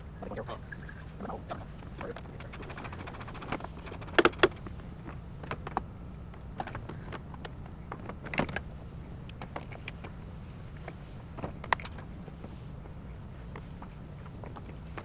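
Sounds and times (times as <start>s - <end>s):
hand tools clicking and knocking: 2.0s - 4.7s.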